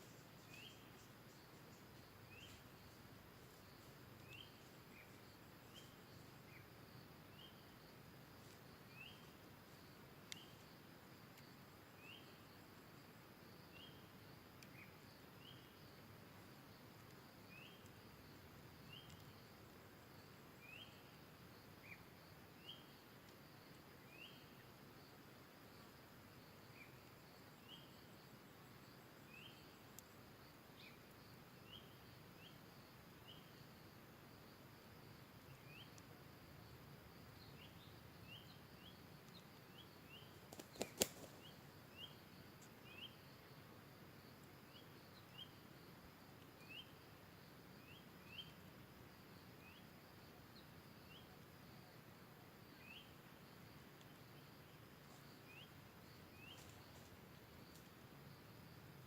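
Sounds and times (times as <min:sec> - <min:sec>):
high insect drone: 0:00.0 - 0:59.0.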